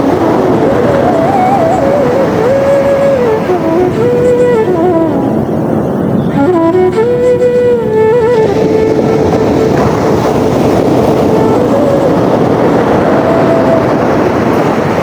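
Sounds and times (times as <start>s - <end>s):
soft slow music: 0.0s - 5.5s, 6.2s - 14.0s
sea waves washing: 0.0s - 15.0s.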